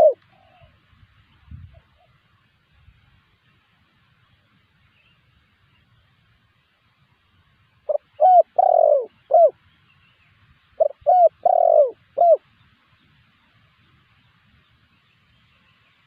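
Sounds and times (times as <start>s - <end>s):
dove cooing: 0.0s - 0.8s, 7.9s - 9.6s, 10.8s - 12.4s.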